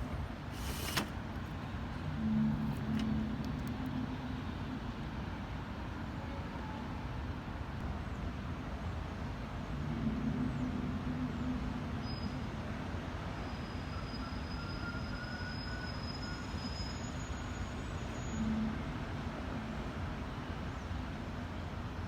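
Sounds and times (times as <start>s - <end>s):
low rumbling drone: 9.4s - 13.0s
faint high whistling tones: 11.3s - 18.8s.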